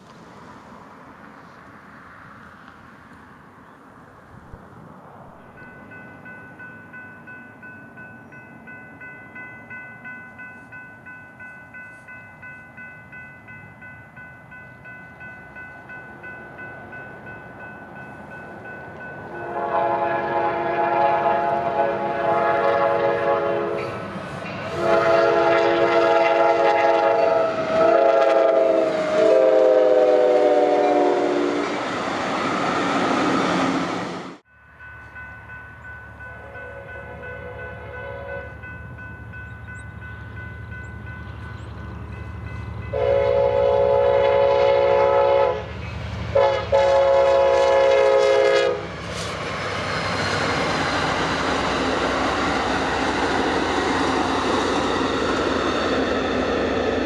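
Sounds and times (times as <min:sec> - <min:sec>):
train passing: 0:00.0 - 0:57.0
railroad crossing bell ringing: 0:05.3 - 0:31.3, 0:34.4 - 0:48.9, 0:49.8 - 0:57.0
locomotive horn: 0:19.3 - 0:31.8, 0:36.3 - 0:38.7, 0:42.9 - 0:49.3.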